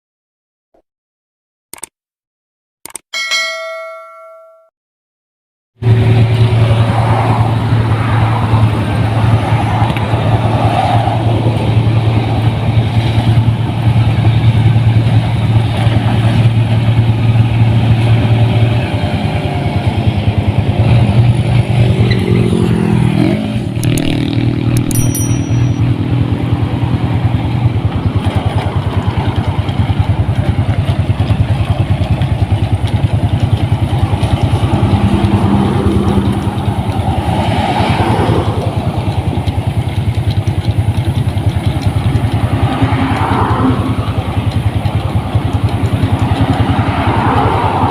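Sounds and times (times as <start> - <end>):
combine harvester engine running: 5.8 - 47.9.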